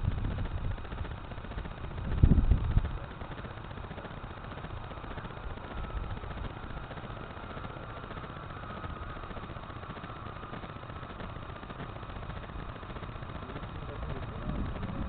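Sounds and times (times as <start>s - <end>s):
wind noise on microphone: 0.0s - 0.9s, 2.0s - 2.9s
model airplane motor droning: 0.0s - 15.0s.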